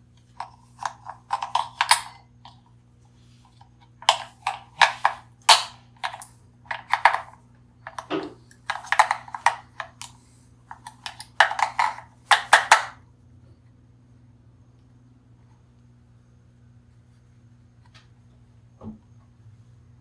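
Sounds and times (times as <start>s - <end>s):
faint steady hum: 0.0s - 20.0s
hands handling small hard objects: 4.0s - 12.9s.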